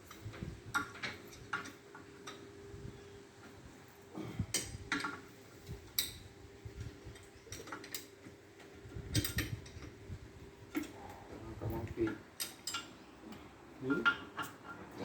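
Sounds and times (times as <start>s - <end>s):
metal tools clinking on engine parts: 12.1s - 15.0s.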